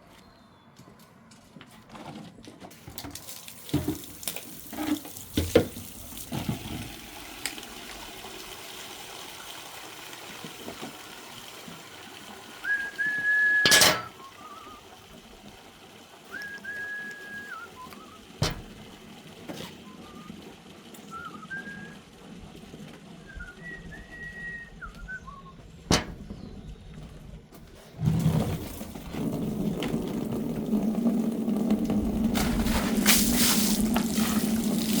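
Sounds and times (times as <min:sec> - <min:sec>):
person whistling a tune: 0:12.6 - 0:14.8, 0:16.3 - 0:18.2, 0:19.8 - 0:20.4, 0:21.0 - 0:22.0, 0:23.2 - 0:25.6
sharp knocks: 0:18.4 - 0:18.9, 0:25.9 - 0:26.4.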